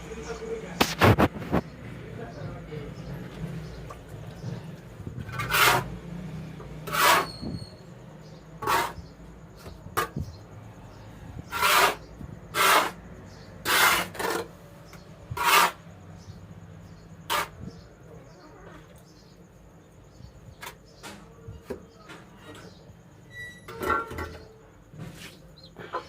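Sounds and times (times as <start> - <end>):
damp sand being scraped: 5.2 - 6.0, 6.8 - 7.6, 8.6 - 9.1, 11.4 - 14.5, 15.3 - 15.8.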